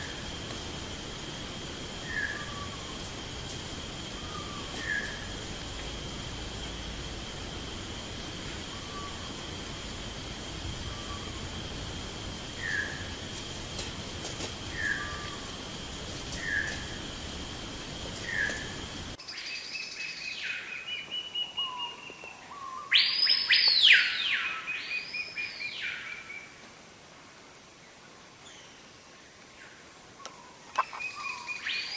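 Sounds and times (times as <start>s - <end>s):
steady high drone: 0.0s - 19.2s
bird chirps: 19.3s - 26.2s, 30.8s - 31.9s.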